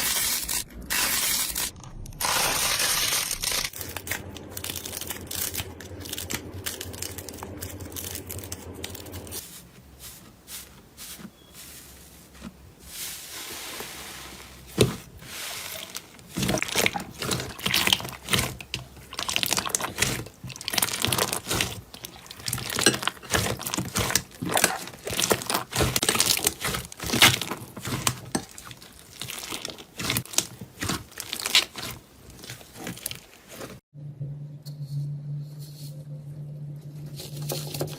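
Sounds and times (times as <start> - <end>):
low steady hum: 1.7 - 31.4, 34.0 - 37.9.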